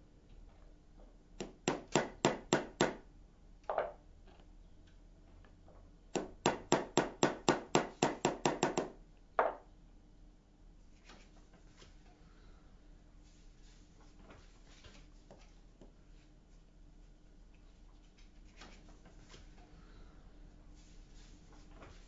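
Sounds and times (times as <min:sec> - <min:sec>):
small hammer tapping a punch: 0:01.4 - 0:03.0, 0:06.1 - 0:09.0.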